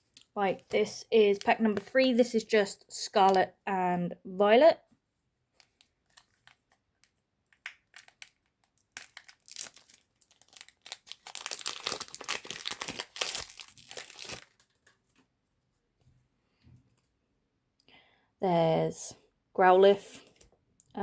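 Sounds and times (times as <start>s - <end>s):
foil wrapper tearing and crinkling: 7.5s - 14.9s.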